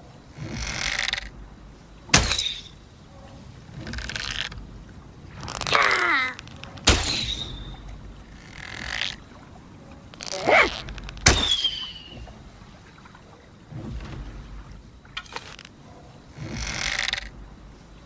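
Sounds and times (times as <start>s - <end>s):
bow creaking as drawn: 0.4s - 1.3s, 3.8s - 4.6s, 5.4s - 6.8s, 8.4s - 9.2s, 10.1s - 11.2s, 16.4s - 17.3s.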